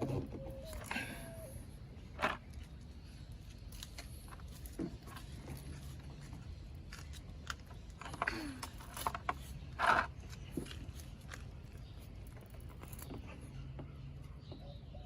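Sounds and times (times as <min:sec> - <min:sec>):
tool clicking and scraping in tire: 0:02.0 - 0:14.1.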